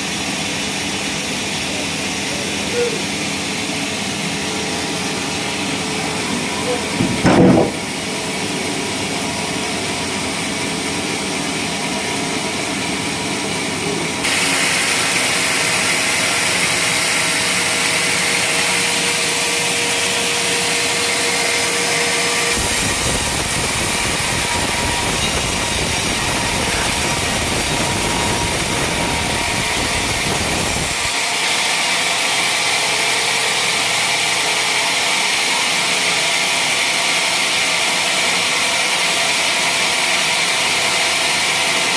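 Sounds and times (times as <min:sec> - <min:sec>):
sawmill machine sawing wood: 0:00.0 - 0:41.9
loud thump: 0:07.0 - 0:07.9.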